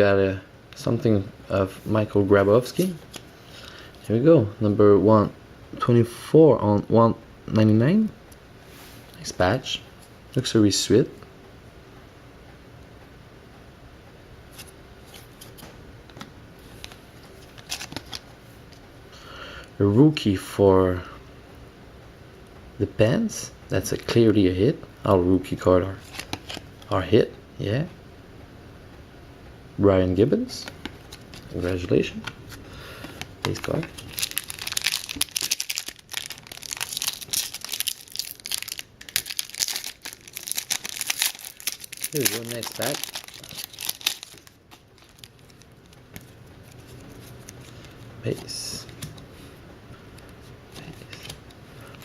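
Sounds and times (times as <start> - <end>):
cards rustling and clicking: 16.7 - 18.3, 26.0 - 26.9, 30.6 - 49.3, 50.1 - 52.0
plastic packaging crinkling: 16.8 - 18.2, 30.6 - 49.0.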